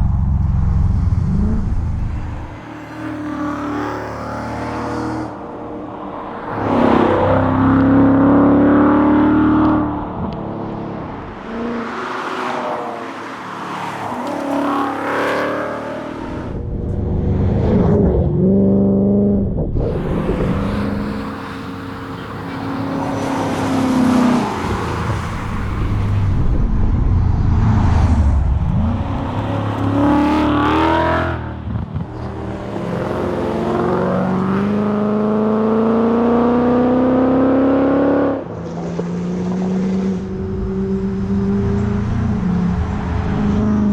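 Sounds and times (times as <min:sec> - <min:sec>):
car engine revving: 0:00.0 - 0:05.4, 0:06.5 - 0:43.9.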